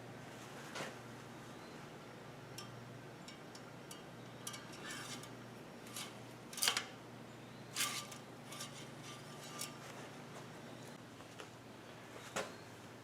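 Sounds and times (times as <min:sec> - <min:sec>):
scraping or rasping: 0:04.6 - 0:06.9, 0:07.7 - 0:10.1.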